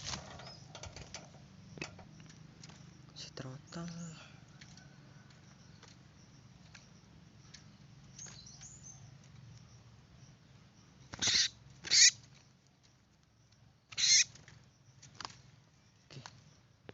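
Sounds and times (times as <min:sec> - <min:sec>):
faint bird chirps: 0:00.0 - 0:16.9
small bird squawking: 0:11.1 - 0:12.2, 0:13.9 - 0:14.4.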